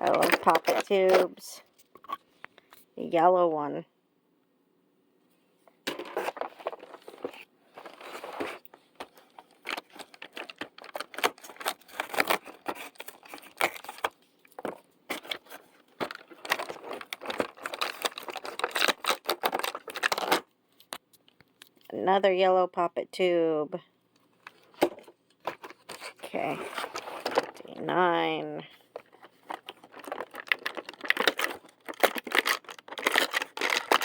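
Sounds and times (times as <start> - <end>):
plastic crinkling: 0.0 - 2.2, 5.9 - 21.0, 28.9 - 34.0.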